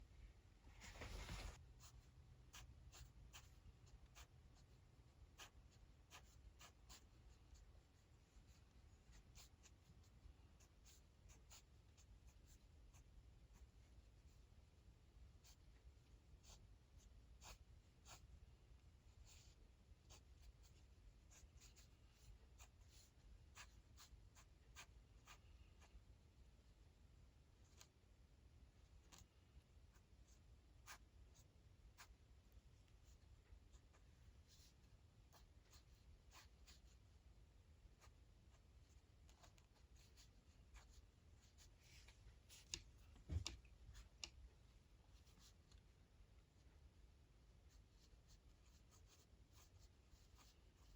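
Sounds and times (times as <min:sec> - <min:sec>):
stylus brushing strokes: 0:00.6 - 0:02.0.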